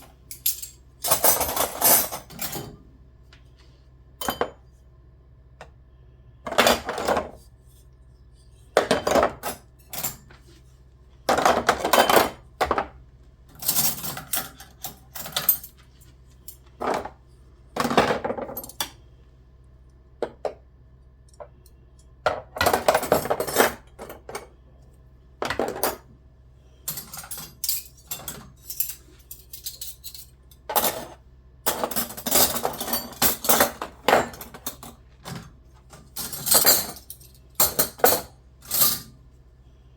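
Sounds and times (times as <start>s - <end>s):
dishes and cutlery clattering: 0.3s - 2.8s, 4.2s - 4.6s, 8.8s - 10.3s, 11.3s - 12.9s, 26.9s - 39.1s.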